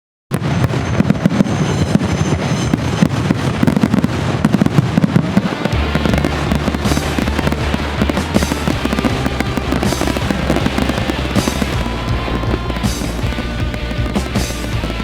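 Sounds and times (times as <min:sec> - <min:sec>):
fireworks crackling and popping: 0:00.3 - 0:15.0
music with low bass: 0:05.8 - 0:15.0.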